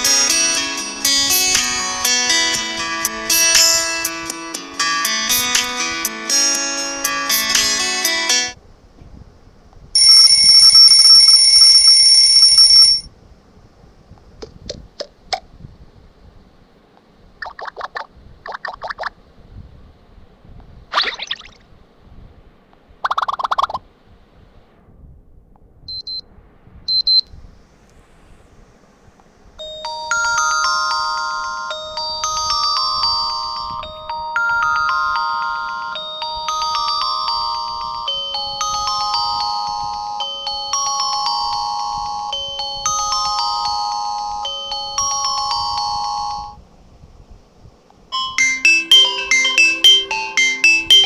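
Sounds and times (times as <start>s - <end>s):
bell-like phone ringtone: 10.0s - 13.1s, 29.6s - 46.6s, 48.2s - 51.0s
short high beeps: 10.0s - 13.1s, 48.2s - 51.0s.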